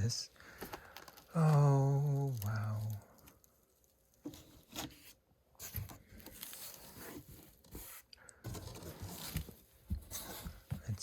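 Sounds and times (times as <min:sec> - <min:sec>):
cardboard box scraping and rustling: 0:06.3 - 0:10.7.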